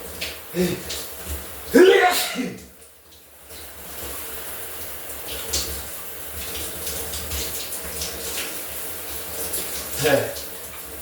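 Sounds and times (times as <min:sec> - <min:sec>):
shower water running: 0:00.0 - 0:11.0.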